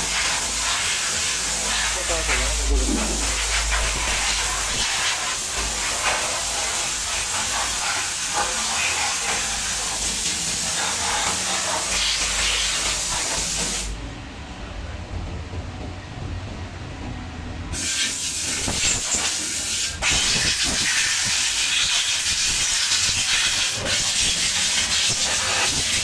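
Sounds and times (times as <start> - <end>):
compressed air hissing: 0.0 - 14.0, 17.8 - 26.0.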